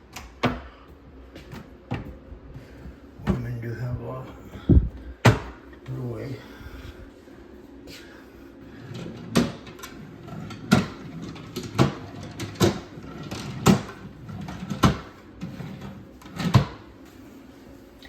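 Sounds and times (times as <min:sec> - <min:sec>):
drawers and cupboard doors shutting: 0:08.8 - 0:16.9.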